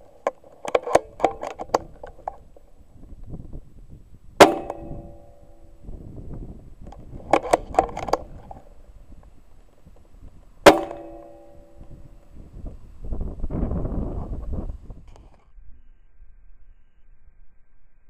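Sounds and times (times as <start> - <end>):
rifle action clicks: 0.2 - 2.4, 6.8 - 8.7
air rifle shots with metallic ring: 4.4 - 5.9, 10.7 - 12.2.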